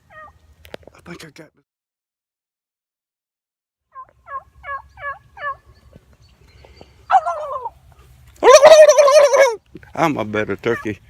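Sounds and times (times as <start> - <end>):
turkey call yelps: 0.1 - 0.4, 3.9 - 6.0, 7.0 - 9.6.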